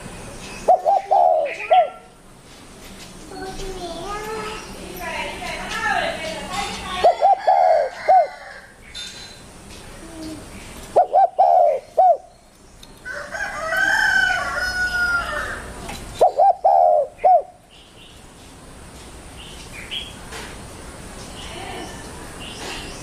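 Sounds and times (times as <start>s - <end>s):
dove cooing: 0.6s - 2.1s, 6.9s - 8.6s, 10.2s - 12.3s, 15.4s - 17.6s.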